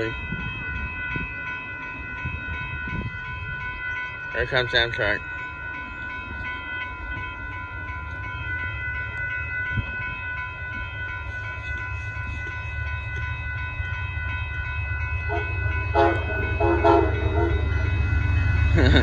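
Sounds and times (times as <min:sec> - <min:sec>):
high ringing tones: 0:00.0 - 0:19.0
train rumble: 0:00.0 - 0:19.0
train horn: 0:15.3 - 0:17.9.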